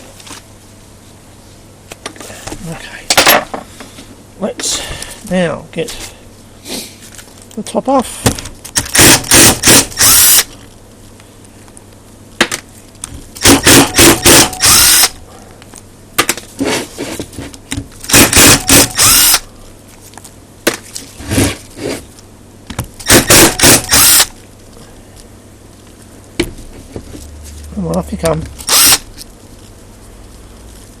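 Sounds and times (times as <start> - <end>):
power screwdriver whine: 8.9 - 10.5, 13.4 - 15.2, 18.1 - 19.5, 23.0 - 24.3, 28.6 - 29.1.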